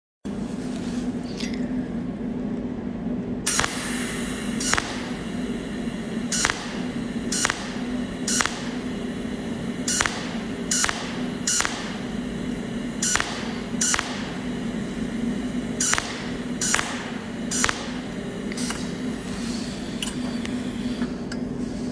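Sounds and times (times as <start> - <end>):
welding electrical hum: 1.1 - 21.9
sharp welding strikes: 3.5 - 20.2.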